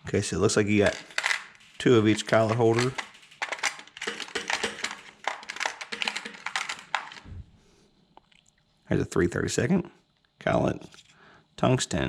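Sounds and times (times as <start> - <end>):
small metal parts clicking: 0.8 - 7.3.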